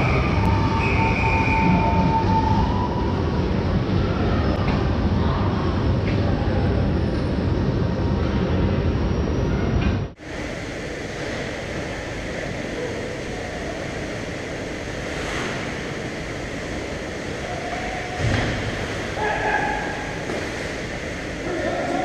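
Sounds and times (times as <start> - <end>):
arena noise hiss: 10.1 - 22.0.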